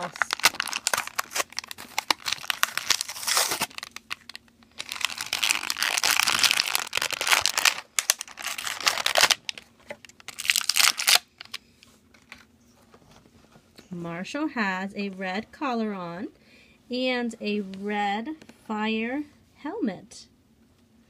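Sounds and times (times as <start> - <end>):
plastic packaging crinkling: 0.0 - 12.5.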